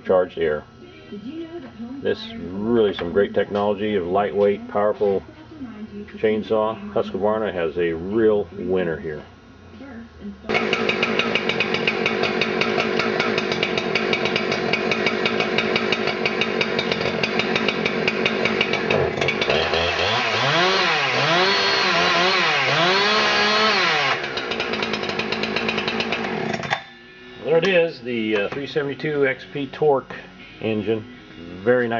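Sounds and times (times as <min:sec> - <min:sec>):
chainsaw engine idling and revving: 0:10.5 - 0:26.8.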